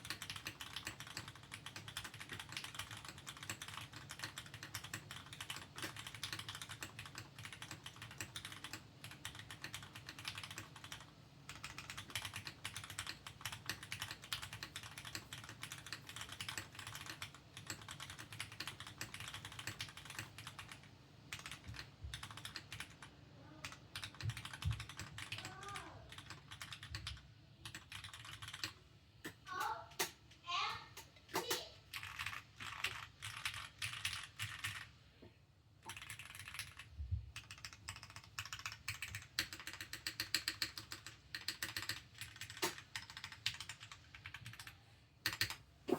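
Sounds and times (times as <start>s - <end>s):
mechanical keyboard typing: 0.0s - 30.2s, 31.0s - 34.9s, 35.8s - 45.6s
faint voice: 25.4s - 26.2s, 29.5s - 31.8s.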